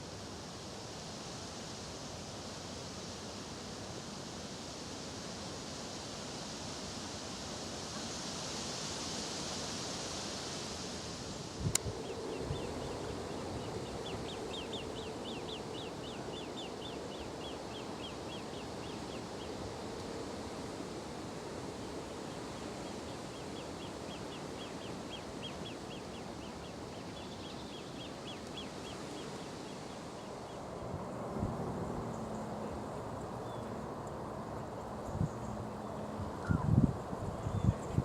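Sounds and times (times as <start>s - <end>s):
background hiss: 0.0s - 38.0s
small bird calling: 36.3s - 36.7s.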